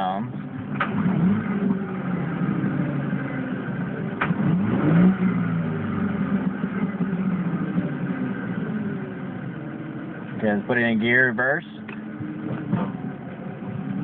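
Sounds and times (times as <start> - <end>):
car engine idling and revving: 0.0 - 14.0.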